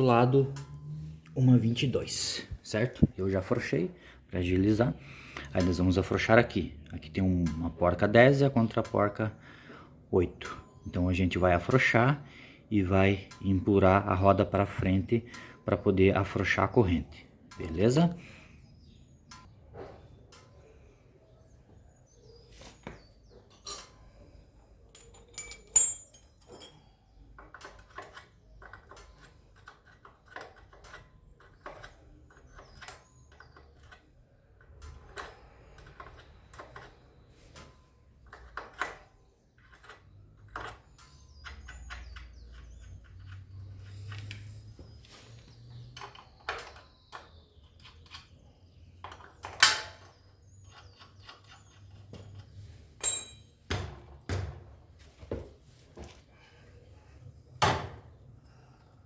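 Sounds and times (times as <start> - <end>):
metal tool clanks: 23.5 - 24.0, 24.9 - 26.8, 53.0 - 53.6.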